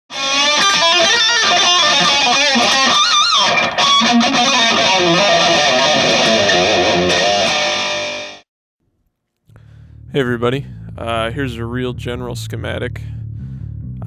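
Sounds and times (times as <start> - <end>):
electric guitar lead line: 0.1 - 8.4.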